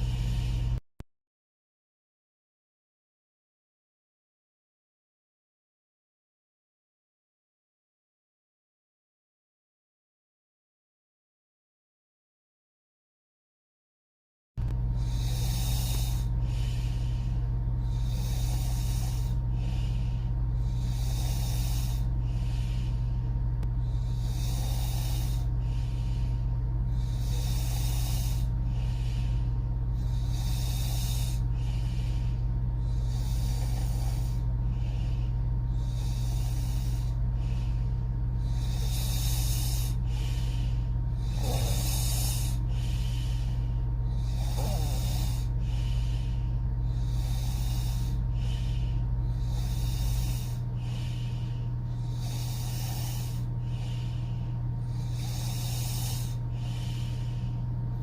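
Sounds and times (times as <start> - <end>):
faint snoring rattle: 0.0 - 0.8, 14.6 - 58.0
steady low hum: 0.0 - 0.8, 14.6 - 58.0
woman breathing noisily while asleep: 0.0 - 0.8, 14.6 - 58.0.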